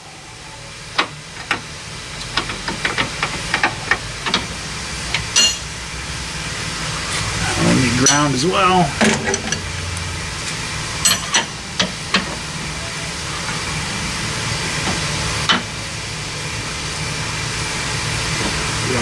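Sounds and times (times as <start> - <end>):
steady hiss: 0.0 - 19.0
hand tools clinking on metal: 5.4 - 5.7, 7.9 - 9.7.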